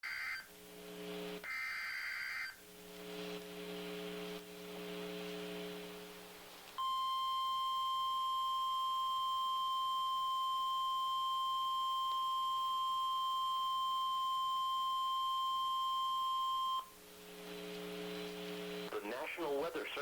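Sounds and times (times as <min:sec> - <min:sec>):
buzzing hum and radio hiss: 0:00.0 - 0:07.3, 0:11.8 - 0:20.0.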